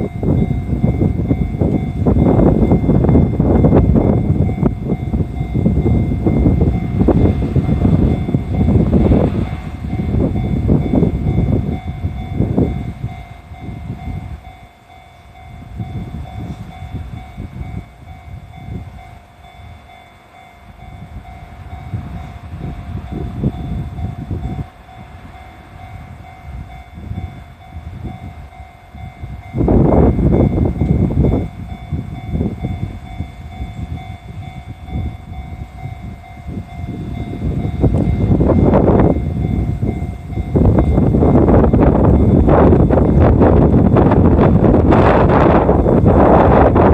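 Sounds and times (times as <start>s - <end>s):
crossing warning bell ringing: 0.0s - 46.9s
train wagons rumbling over rails: 0.0s - 46.9s.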